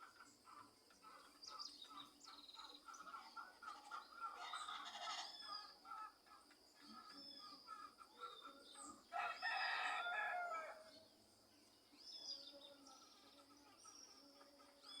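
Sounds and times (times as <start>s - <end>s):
small birds chirping: 0.0s - 15.0s
rooster crowing: 9.1s - 10.9s.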